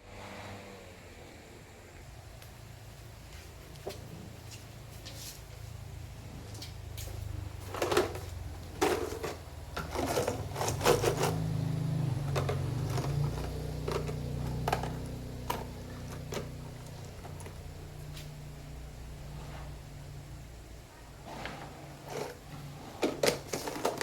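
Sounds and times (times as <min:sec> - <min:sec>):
small parts clicking and knocking: 0:12.2 - 0:17.7.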